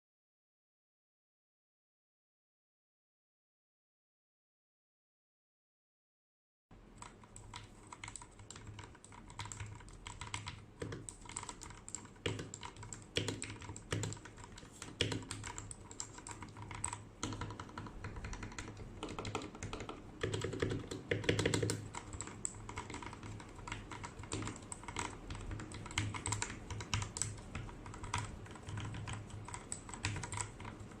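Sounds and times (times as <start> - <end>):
mechanical keyboard typing: 7.0 - 31.0.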